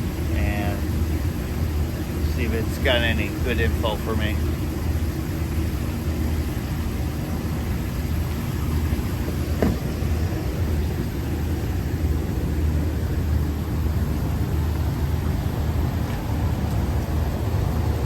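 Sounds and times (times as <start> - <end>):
rooftop unit fans droning: 0.0 - 18.0
short knock: 9.6 - 9.9.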